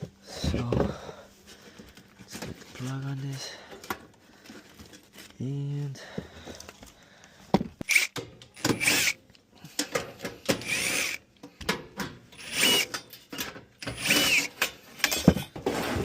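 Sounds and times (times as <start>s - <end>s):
cordless drill spinning: 7.8s - 9.2s, 10.4s - 11.3s, 12.4s - 13.0s, 13.8s - 15.2s.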